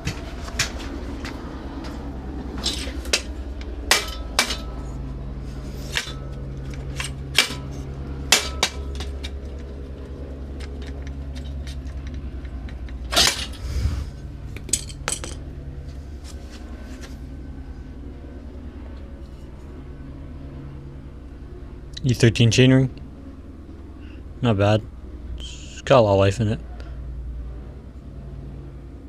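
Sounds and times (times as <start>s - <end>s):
steady low hum: 0.0s - 29.0s
metal clanking scrape: 2.6s - 9.6s, 13.0s - 15.4s.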